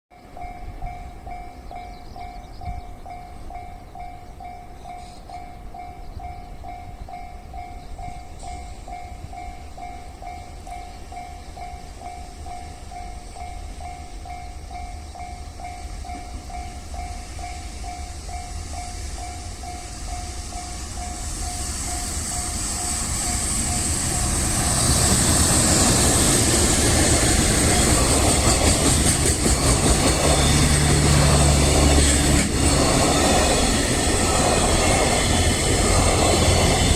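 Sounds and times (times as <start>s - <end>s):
freight train passing: 0.1s - 36.9s
wheels clattering over rail joints: 23.1s - 36.9s.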